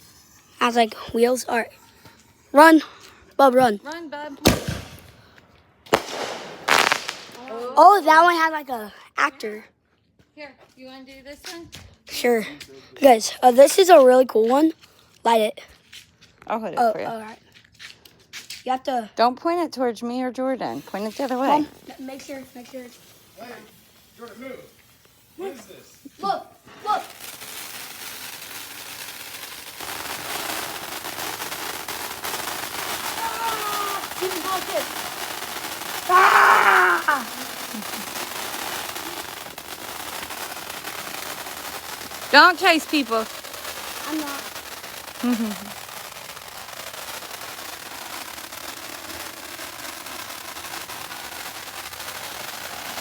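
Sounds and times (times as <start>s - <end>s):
firework crackling hiss: 0.0s - 3.8s, 4.4s - 8.8s, 20.6s - 53.0s.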